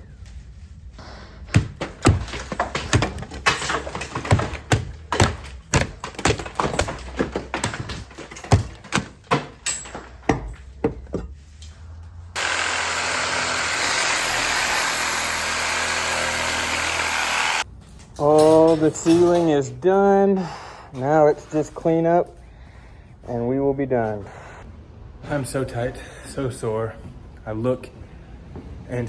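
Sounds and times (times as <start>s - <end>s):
demolition knocks and crashes: 1.5s - 11.7s, 17.9s - 19.8s.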